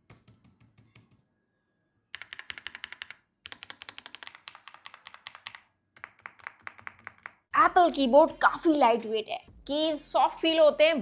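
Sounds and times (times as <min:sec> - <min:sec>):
rapid loud keyboard clicks: 0:00.0 - 0:01.3, 0:02.1 - 0:07.5.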